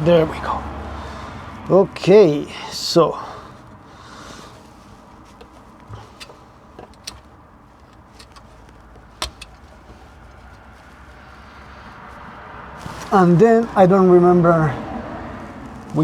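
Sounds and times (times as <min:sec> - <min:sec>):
small clicks and taps: 0:07.9 - 0:10.0.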